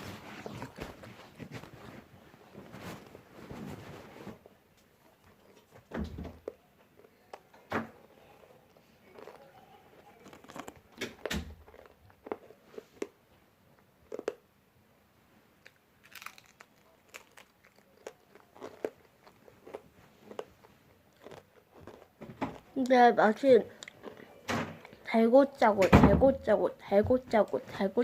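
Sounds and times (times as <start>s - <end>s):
chips being bitten and chewed: 9.0s - 13.1s, 14.1s - 14.4s, 15.6s - 22.7s, 23.8s - 24.2s.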